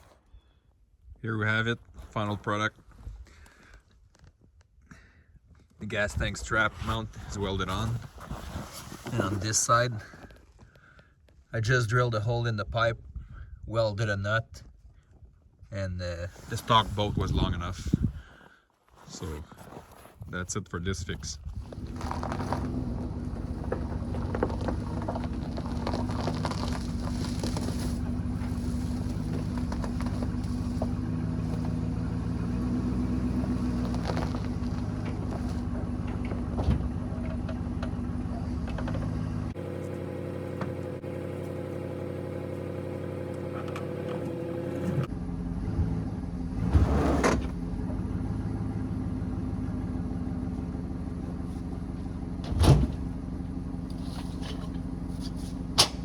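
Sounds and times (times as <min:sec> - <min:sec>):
car engine idling: 0:21.6 - 0:46.7, 0:47.5 - 0:56.0.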